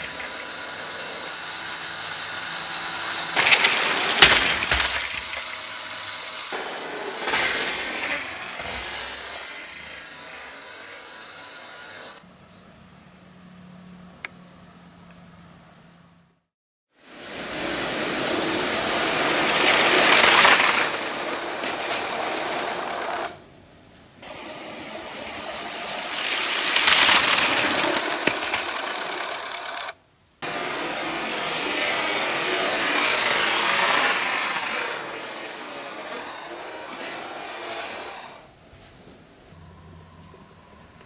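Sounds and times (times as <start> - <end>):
toy train motors whirring: 0.0 - 12.2, 17.0 - 23.4, 24.2 - 38.6
wheels rattling on plastic track: 0.0 - 12.2, 17.1 - 23.4, 24.2 - 38.5
plastic cars knocking together: 3.1 - 9.4, 18.4 - 23.4, 26.1 - 30.0.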